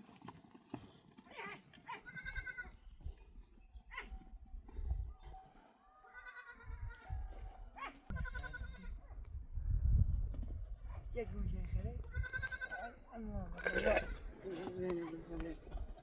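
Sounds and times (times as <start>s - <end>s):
goats bleating: 1.3s - 2.8s, 6.0s - 7.0s, 8.1s - 9.0s, 12.1s - 13.0s, 13.6s - 14.5s.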